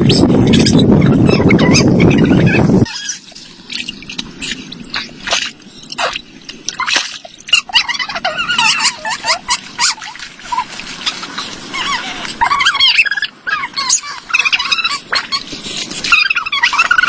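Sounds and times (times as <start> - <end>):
water dripping and splashing: 2.8 - 13.2.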